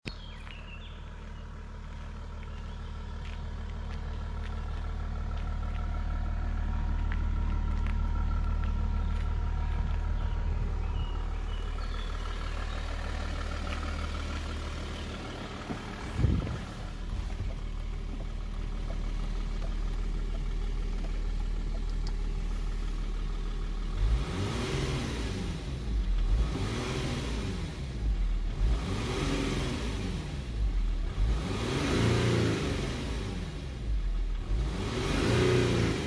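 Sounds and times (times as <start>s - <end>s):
diesel engine idling: 0.1s - 26.7s.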